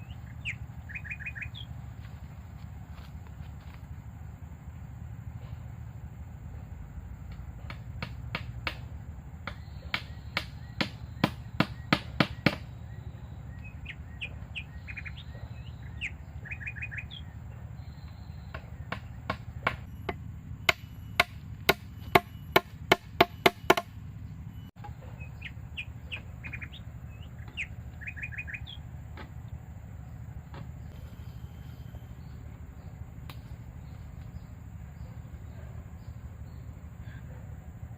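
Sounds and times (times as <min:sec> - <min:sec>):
bird chirps: 0:00.0 - 0:01.8, 0:09.4 - 0:30.2, 0:30.8 - 0:37.5
tool strikes on wood: 0:07.3 - 0:12.7, 0:18.5 - 0:23.9.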